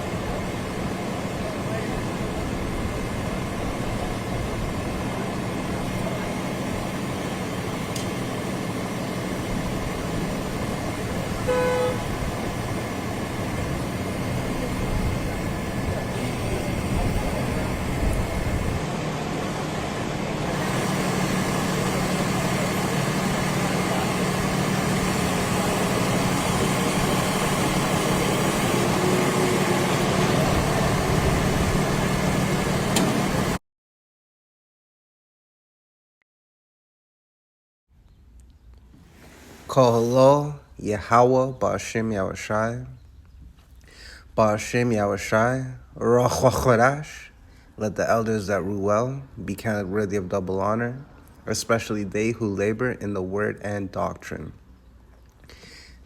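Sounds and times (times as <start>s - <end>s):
city street traffic: 0.0s - 33.6s, 38.0s - 56.0s
car horn: 11.3s - 12.4s.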